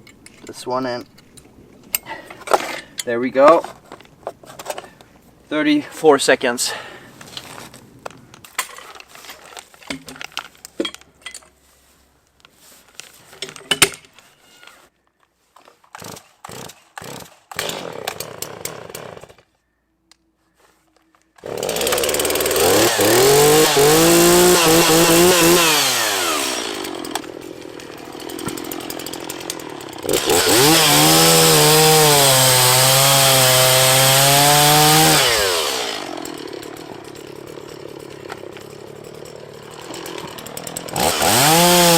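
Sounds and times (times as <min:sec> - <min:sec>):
chainsaw cutting a log: 0:16.0 - 0:19.4, 0:21.4 - 0:41.9.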